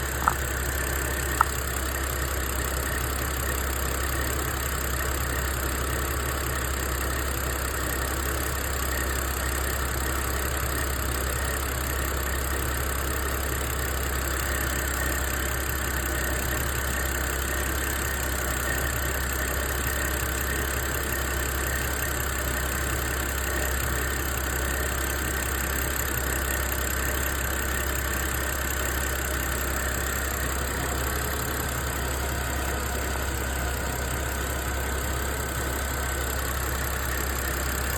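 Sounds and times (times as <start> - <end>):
car engine idling: 0.0 - 37.9.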